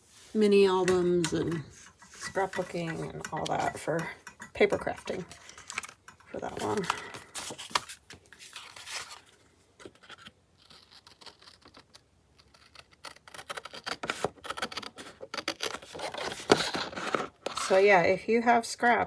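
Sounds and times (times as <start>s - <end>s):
paper rustling and scratching: 5.0s - 18.0s.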